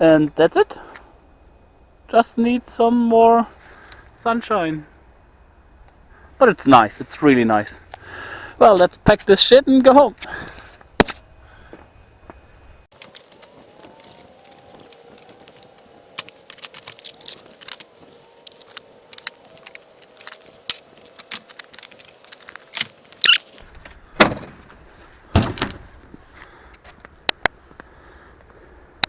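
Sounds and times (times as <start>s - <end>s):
gear clicking and rattling: 12.9s - 23.6s
loud thumps: 25.3s - 25.9s.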